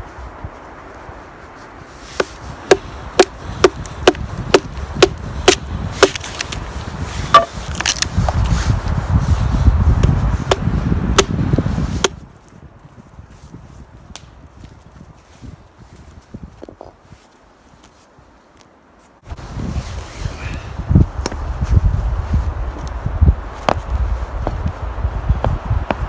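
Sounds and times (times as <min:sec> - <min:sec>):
wood being chopped: 0:02.2 - 0:06.6, 0:07.3 - 0:08.4, 0:10.0 - 0:11.4, 0:12.0 - 0:12.2.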